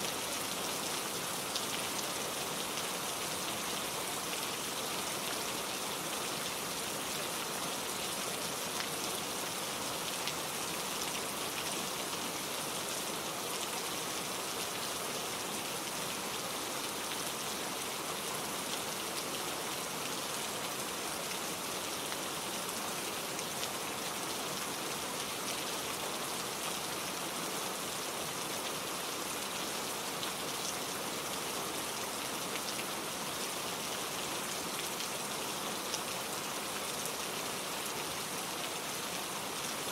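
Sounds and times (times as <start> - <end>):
rain falling on leaves: 0.0 - 39.9.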